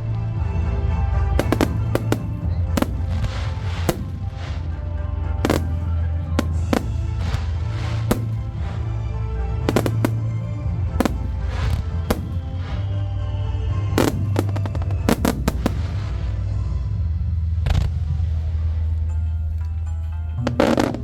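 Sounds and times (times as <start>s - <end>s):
firework shells bursting: 1.4s - 4.8s, 5.4s - 13.0s, 14.0s - 16.2s.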